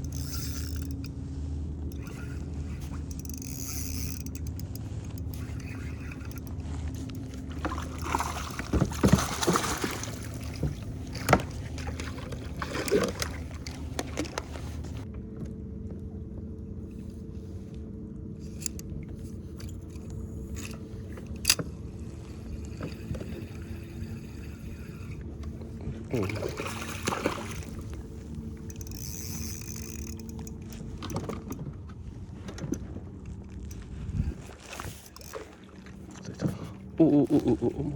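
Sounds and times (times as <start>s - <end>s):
steady low hum: 0.0s - 37.9s
gear knocking and scraping: 1.8s - 15.1s, 27.9s - 35.4s.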